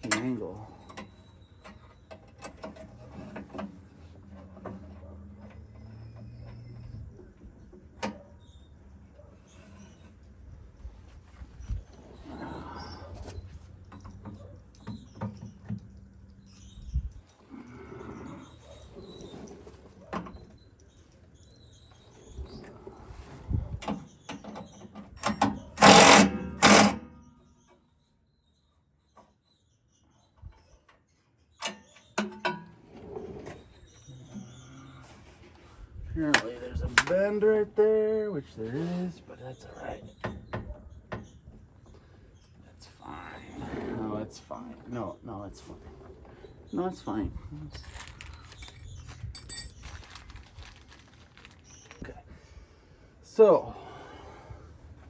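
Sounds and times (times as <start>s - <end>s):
faint rustling: 47.8s - 52.0s.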